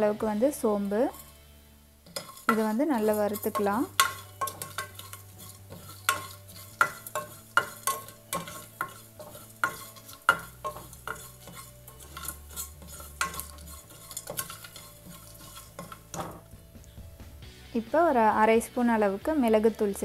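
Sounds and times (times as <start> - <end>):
utensil scraping a pan: 0.8 - 1.4, 2.0 - 16.5.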